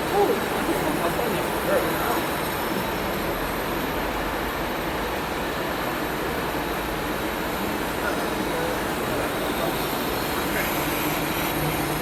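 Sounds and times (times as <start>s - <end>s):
lathe running: 6.0s - 12.0s.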